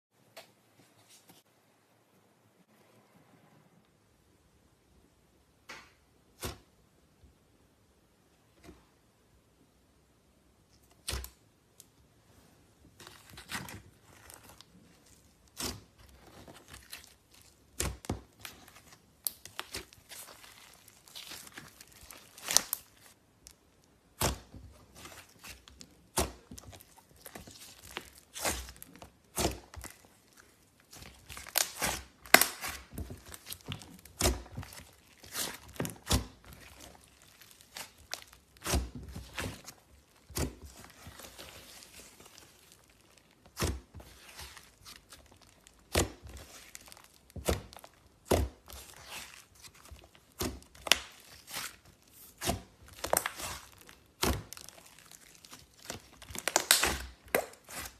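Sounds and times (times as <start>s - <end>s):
slime wet pops and crackles: 16.6s - 57.9s.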